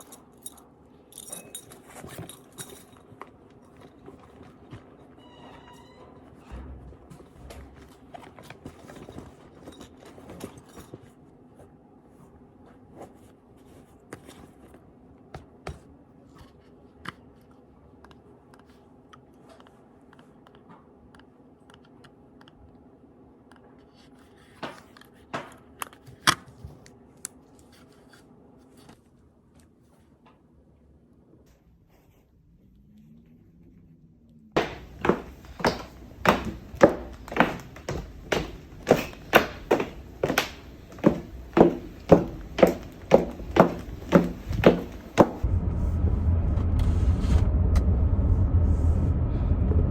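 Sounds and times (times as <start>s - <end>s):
low steady hum: 32.6s - 49.9s.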